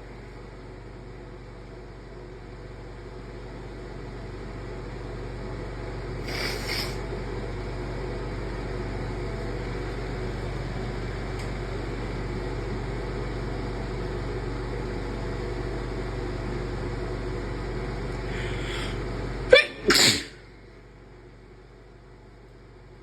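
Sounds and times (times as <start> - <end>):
steady background hum and hiss: 0.0 - 23.0
short hissing burst: 6.2 - 7.0, 18.3 - 20.4.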